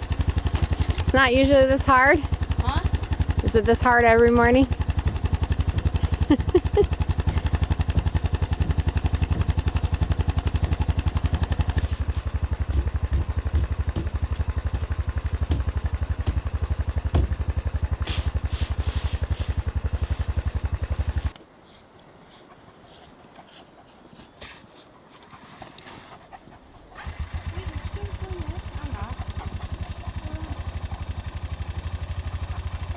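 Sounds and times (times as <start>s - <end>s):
small engine running: 0.0s - 21.4s, 26.9s - 32.9s
knocks: 12.6s - 18.2s.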